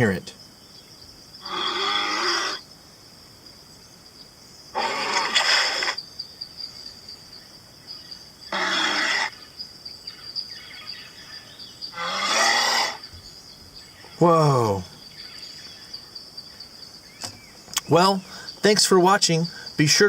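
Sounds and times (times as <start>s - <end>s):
bear rough calls: 1.4s - 2.7s, 4.7s - 6.0s, 8.5s - 9.4s, 11.9s - 13.1s.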